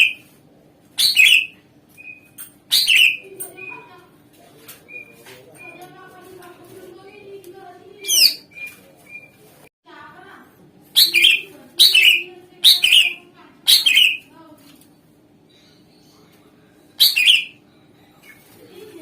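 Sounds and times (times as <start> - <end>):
bird whistled calls: 1.0 - 3.2, 11.0 - 14.3, 17.0 - 17.6.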